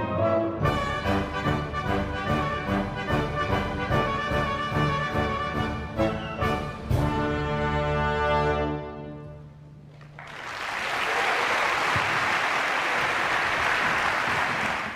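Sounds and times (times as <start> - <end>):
audience applause: 10.0 - 14.9.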